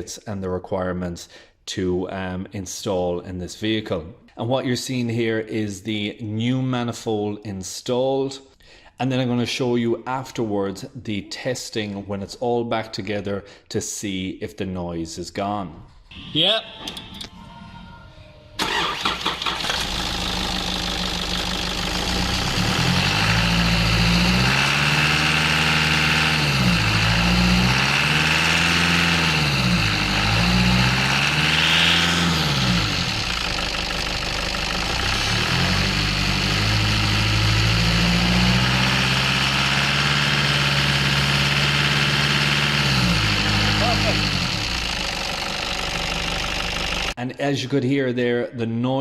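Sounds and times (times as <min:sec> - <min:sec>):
diesel engine starting and revving: 0:18.6 - 0:47.2.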